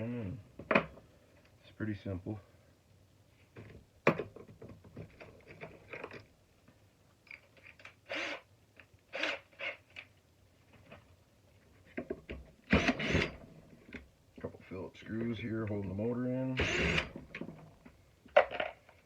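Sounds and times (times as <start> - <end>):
plastic parts clicking and knocking: 16.6 - 19.0.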